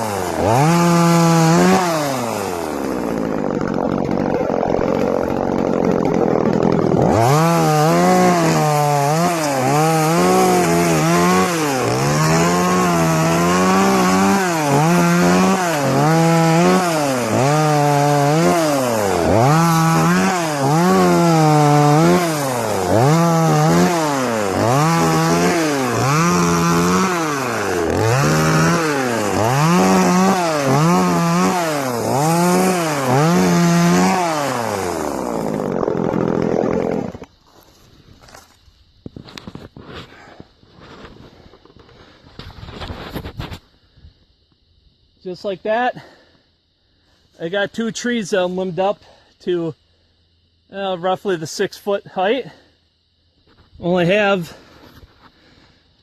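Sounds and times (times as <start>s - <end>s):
chainsaw revving: 0.0s - 37.3s.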